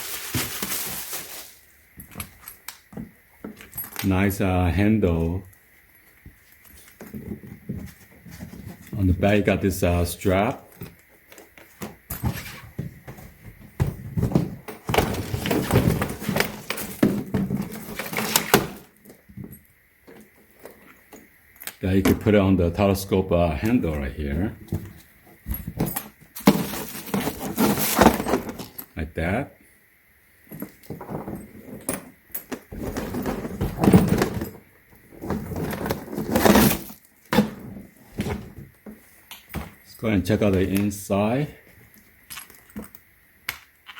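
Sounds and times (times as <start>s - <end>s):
suitcase scraping and knocking: 11.8s - 19.5s, 24.6s - 28.8s, 30.5s - 39.0s.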